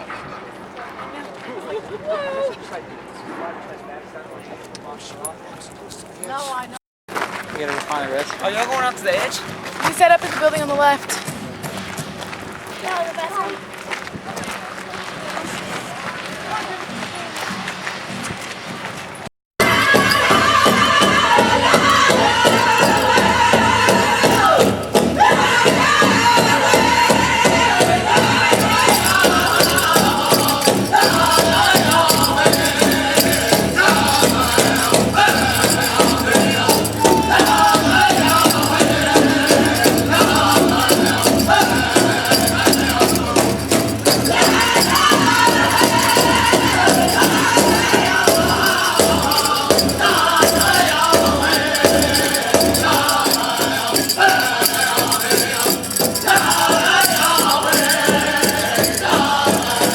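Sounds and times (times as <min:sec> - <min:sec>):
person singing: 0:19.6 - 0:59.9
shaker percussion: 0:19.6 - 0:59.9
steady beat: 0:19.6 - 0:59.9.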